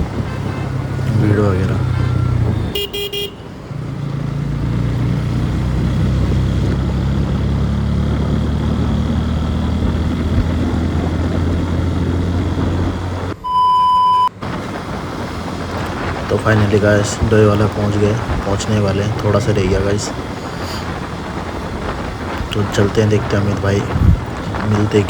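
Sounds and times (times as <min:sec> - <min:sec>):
motorcycle engine running: 0:00.0 - 0:13.4
electronic beep: 0:13.4 - 0:14.3.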